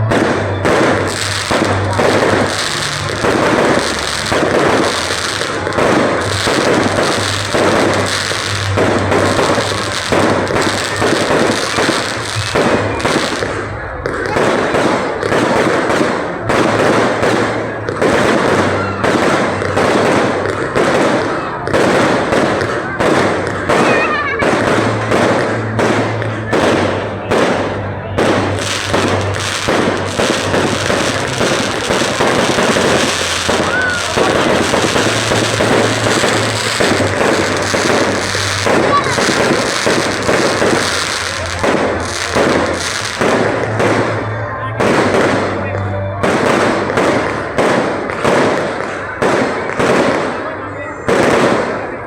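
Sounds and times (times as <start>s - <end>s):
fireworks crackling and bursting: 0.0s - 52.0s.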